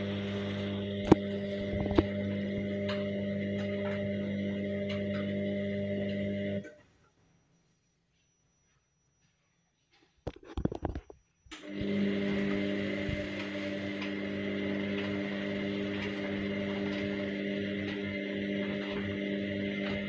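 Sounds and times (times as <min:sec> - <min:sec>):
washing machine motor humming: 0:00.0 - 0:06.8, 0:11.5 - 0:20.0.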